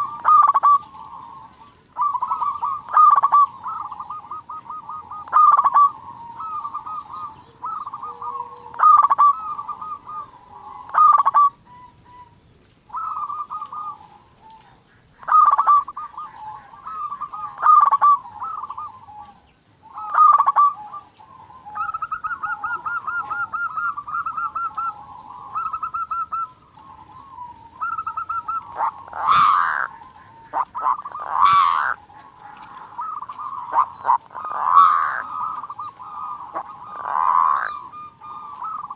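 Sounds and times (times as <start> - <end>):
dove cooing: 0.0 - 38.9
harsh bird bursts: 28.4 - 32.0, 33.1 - 37.9.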